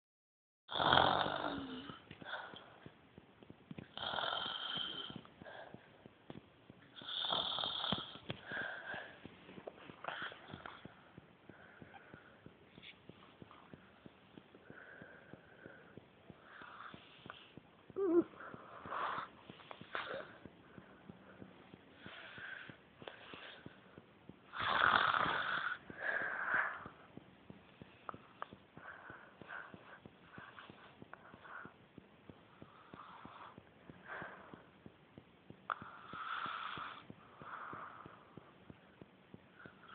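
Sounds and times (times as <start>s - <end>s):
woman snoring with whistling: 0.7s - 2.0s
woman snoring: 0.7s - 2.6s, 3.9s - 5.3s, 7.0s - 8.2s, 18.0s - 19.3s, 24.5s - 26.9s, 35.7s - 38.2s
faint breaths: 1.2s - 3.0s, 3.7s - 7.2s, 7.8s - 39.9s.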